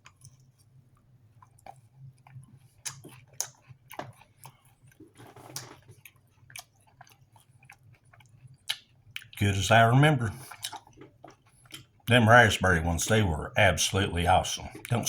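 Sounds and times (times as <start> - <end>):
person chewing: 1.4 - 9.4, 10.3 - 12.1, 14.6 - 15.0.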